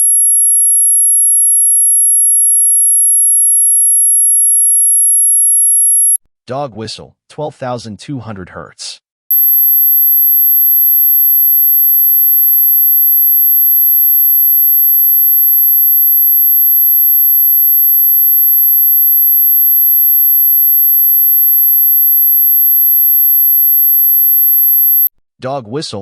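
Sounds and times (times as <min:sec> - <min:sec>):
steady high-pitched tone: 0:09.3 - 0:25.1.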